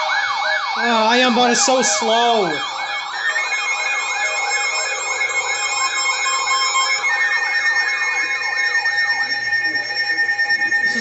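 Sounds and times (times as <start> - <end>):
steady alarm tones: 0.0 - 11.0.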